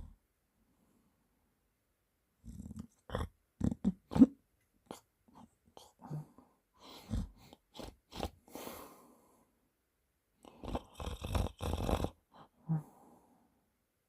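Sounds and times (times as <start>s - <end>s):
man snorting in sleep: 2.4s - 4.4s, 5.8s - 9.1s, 10.4s - 13.2s.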